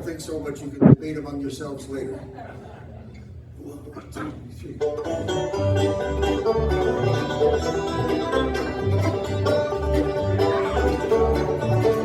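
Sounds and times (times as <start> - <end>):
banjo: 4.8 - 12.0
bluegrass band playing: 4.8 - 12.0
bass notes pulsing: 5.2 - 12.0.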